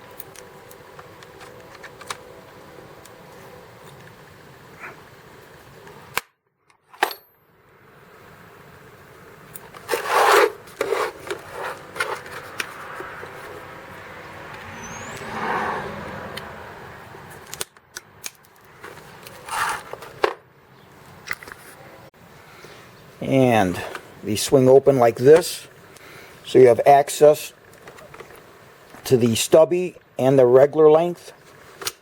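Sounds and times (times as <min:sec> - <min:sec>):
plastic scraping and rustling: 0:09.6 - 0:13.7, 0:18.4 - 0:20.4.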